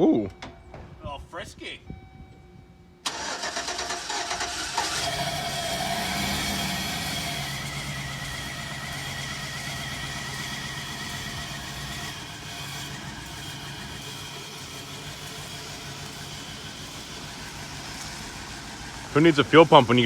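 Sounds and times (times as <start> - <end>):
van engine running: 3.0 - 20.0.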